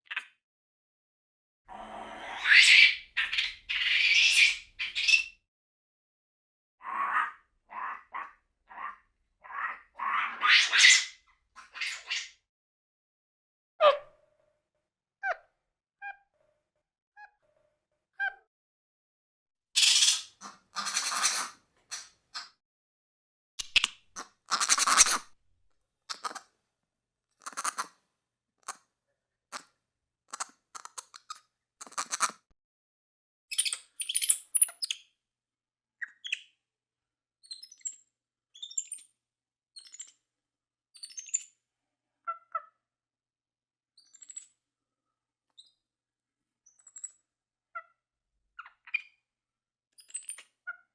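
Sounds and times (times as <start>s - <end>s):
monkey screeches: 2.4s - 5.3s, 6.8s - 12.3s
monkey chirps and squeaks: 19.8s - 22.5s, 23.6s - 25.2s, 27.4s - 27.9s, 30.3s - 32.4s, 33.5s - 35.0s, 37.4s - 38.0s, 38.6s - 39.0s, 41.0s - 41.6s, 44.0s - 44.4s, 48.6s - 49.2s, 50.0s - 50.9s.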